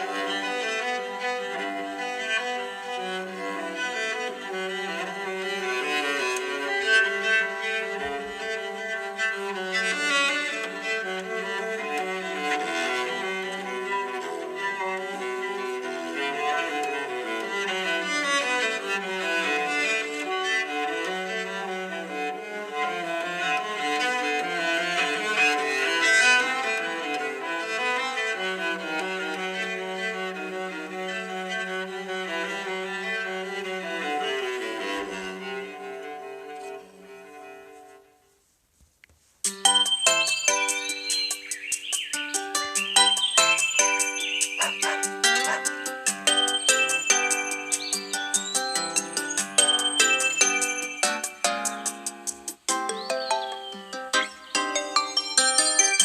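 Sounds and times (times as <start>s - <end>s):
bowed strings melody: 0.0s - 38.1s, 39.5s - 56.0s
bright chiming tone: 39.5s - 52.0s, 52.7s - 56.0s.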